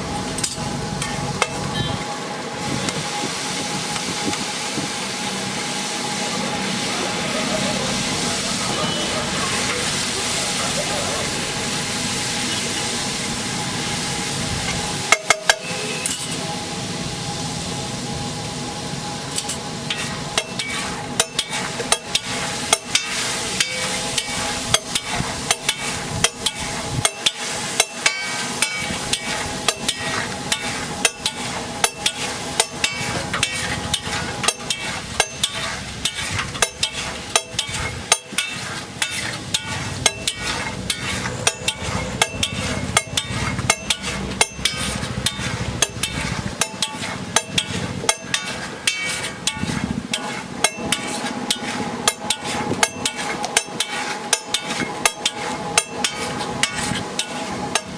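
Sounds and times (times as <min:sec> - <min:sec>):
metal spatula scraping griddle: 0:00.2 - 0:02.0, 0:14.7 - 0:16.6, 0:19.3 - 0:57.9
egg sizzling: 0:19.2 - 0:57.9.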